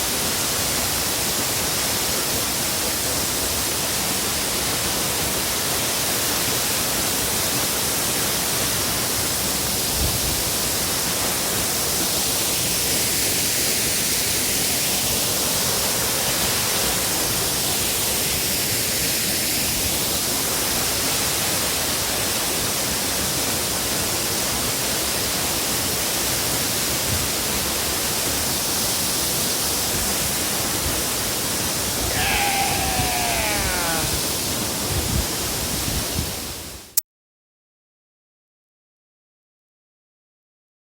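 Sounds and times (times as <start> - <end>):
waterfall rushing: 31.6 - 34.7.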